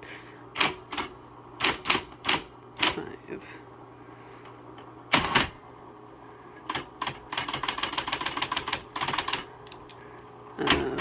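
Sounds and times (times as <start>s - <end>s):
typewriter motor humming: 0.5s - 3.0s, 5.1s - 5.6s, 6.6s - 10.0s, 10.6s - 11.0s
typewriter keystrokes: 0.6s - 3.0s, 5.1s - 5.5s, 6.7s - 9.8s.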